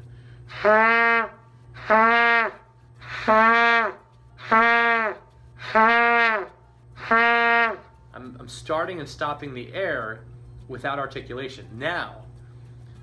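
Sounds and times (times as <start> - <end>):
trumpet short low notes: 0.5 - 7.9.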